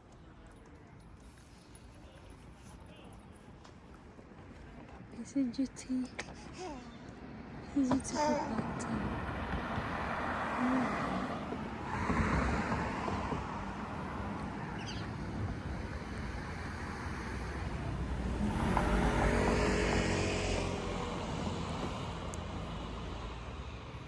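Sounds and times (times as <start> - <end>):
vehicles passing: 4.1 - 24.0.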